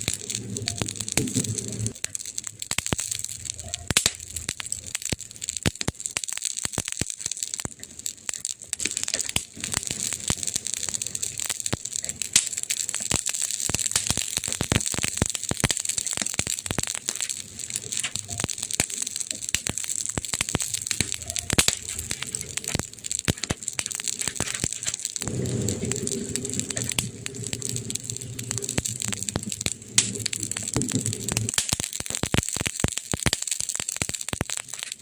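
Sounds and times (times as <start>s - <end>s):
wood fire crackling: 0.0s - 35.0s
low steady rumble: 24.8s - 31.5s.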